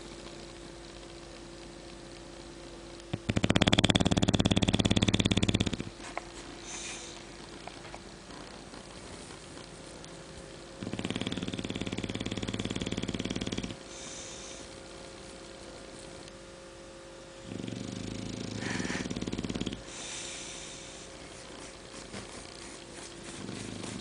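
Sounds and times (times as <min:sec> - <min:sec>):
dog snoring: 0:03.1 - 0:09.8, 0:10.8 - 0:16.2, 0:17.4 - 0:24.0
dog breathy exhale: 0:06.6 - 0:07.2, 0:13.9 - 0:14.8, 0:18.5 - 0:21.7.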